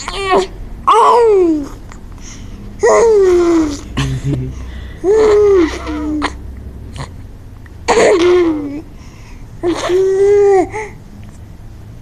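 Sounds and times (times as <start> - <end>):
baby making drawn-out vocal noises: 0.0 - 1.8, 2.8 - 4.0, 5.0 - 6.4.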